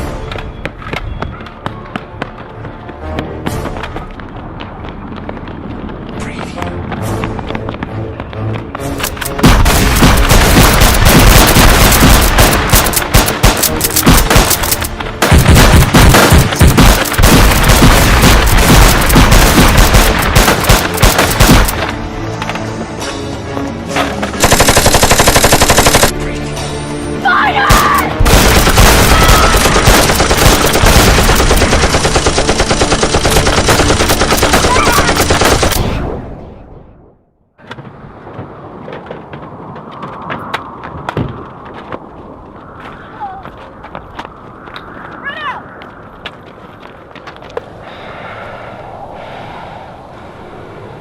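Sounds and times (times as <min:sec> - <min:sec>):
music: 0:00.0 - 0:05.2, 0:06.1 - 0:11.0, 0:12.2 - 0:35.8
machine-gun fire: 0:09.4 - 0:21.8, 0:24.4 - 0:26.1, 0:28.2 - 0:35.8.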